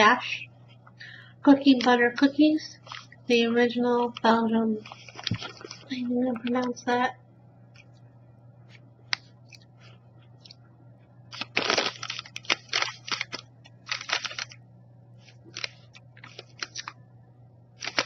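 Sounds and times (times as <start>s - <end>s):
packaging crinkling and tearing: 4.8s - 6.0s, 11.3s - 14.6s, 15.2s - 17.0s, 17.8s - 18.0s.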